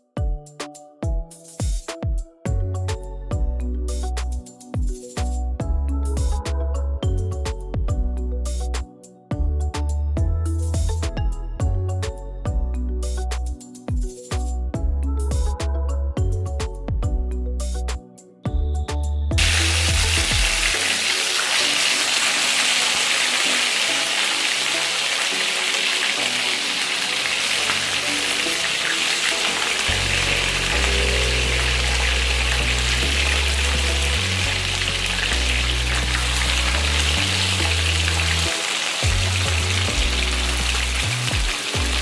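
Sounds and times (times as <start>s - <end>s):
background music with bass line: 0.0s - 25.2s, 27.2s - 42.0s
chicken frying in hot oil: 19.4s - 42.0s.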